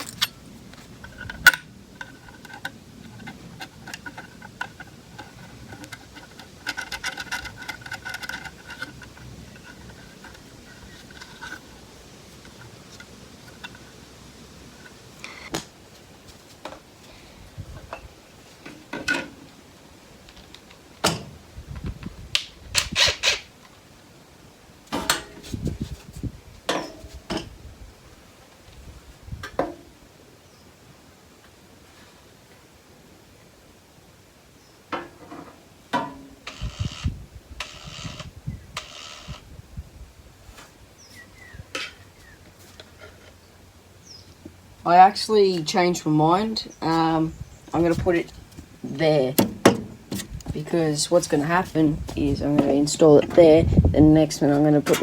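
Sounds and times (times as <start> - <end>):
small metal parts clicking and rattling: 0.0 - 11.7.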